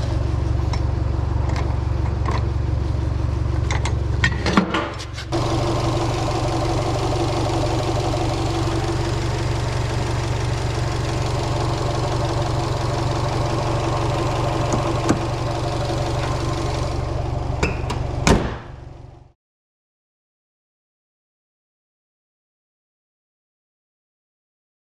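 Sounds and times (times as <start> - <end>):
car engine idling: 0.0 - 19.3.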